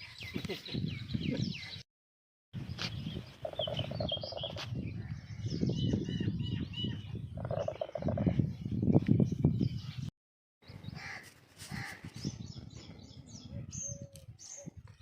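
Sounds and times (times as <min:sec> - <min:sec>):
small birds chirping: 0:02.6 - 0:15.0
buzzy bird calls: 0:03.4 - 0:04.6.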